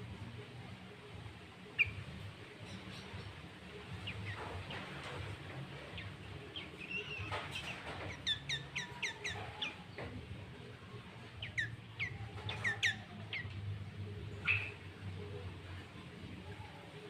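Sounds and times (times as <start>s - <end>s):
faint low hum: 0.0s - 17.0s
bulbul calling: 5.9s - 9.8s, 11.4s - 13.6s, 14.3s - 14.9s.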